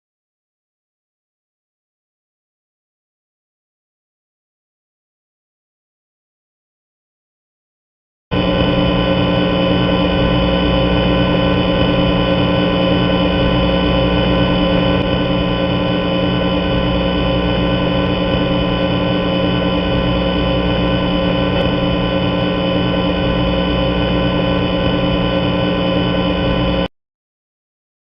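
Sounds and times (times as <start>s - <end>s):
loud electronic drone: 8.3s - 26.9s.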